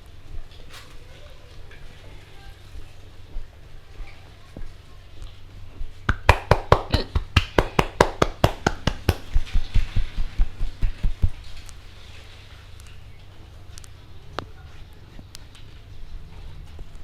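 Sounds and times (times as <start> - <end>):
hands slapping on a head: 6.1 - 11.4.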